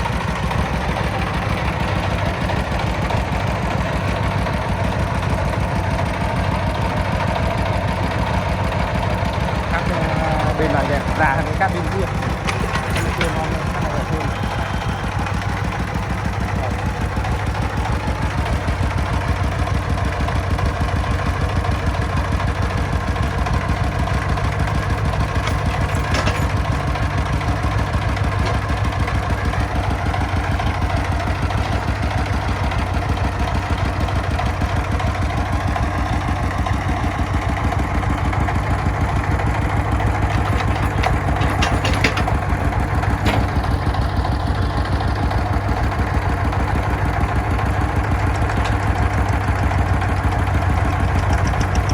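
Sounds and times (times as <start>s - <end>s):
diesel engine idling: 0.0s - 51.9s.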